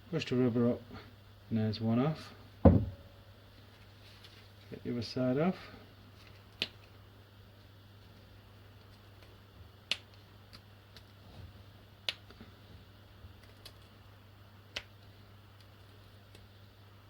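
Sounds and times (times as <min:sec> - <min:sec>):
faint low hum: 0:00.0 - 0:17.0.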